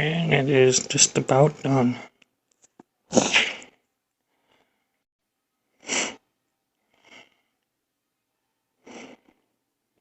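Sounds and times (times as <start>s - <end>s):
person breathing close up: 3.2s - 5.0s, 6.8s - 7.6s.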